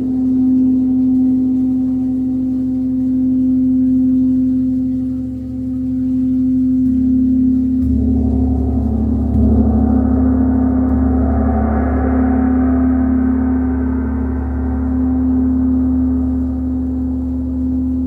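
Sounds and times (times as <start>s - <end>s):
gong struck softly: 6.8s - 18.0s.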